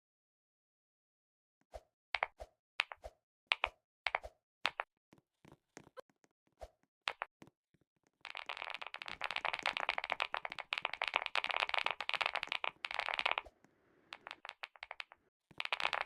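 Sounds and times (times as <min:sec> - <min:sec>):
cream squishing with crackling clicks: 0:07.8 - 0:13.5.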